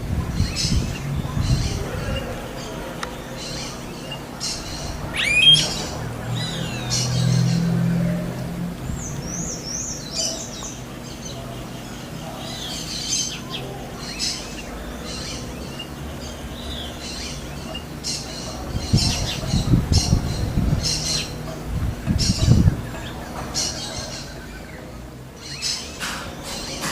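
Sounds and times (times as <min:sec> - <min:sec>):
low rumbling: 0:00.0 - 0:11.5
short high bird chirps: 0:05.1 - 0:05.8
wavering whistled bird call: 0:05.1 - 0:06.6.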